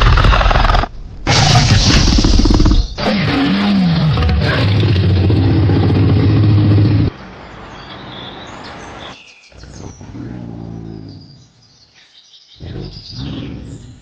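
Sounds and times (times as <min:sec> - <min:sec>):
birds chirping: 0:04.5 - 0:14.0.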